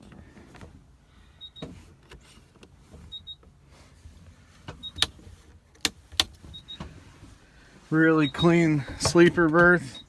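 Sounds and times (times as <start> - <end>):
switches clicking and knocking: 4.7 - 6.9
high double beep: 8.2 - 8.6.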